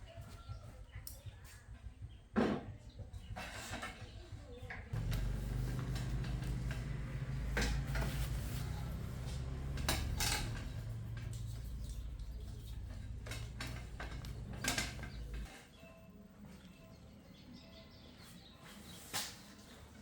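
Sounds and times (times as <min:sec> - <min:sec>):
hard objects knocking: 0:05.0 - 0:15.5.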